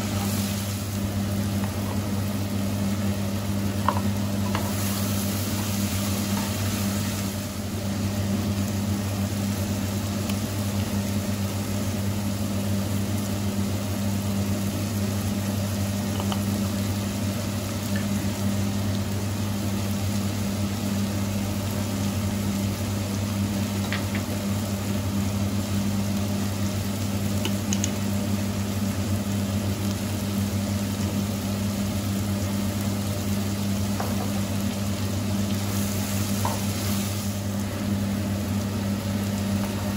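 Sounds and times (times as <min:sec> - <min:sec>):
food sizzling in a frying pan: 0:00.0 - 0:39.9
low electrical hum: 0:00.0 - 0:39.9.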